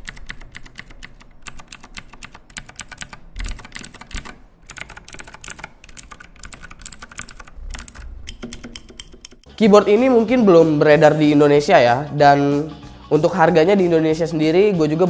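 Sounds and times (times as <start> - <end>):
mechanical keyboard key clicks: 0.0 - 9.5.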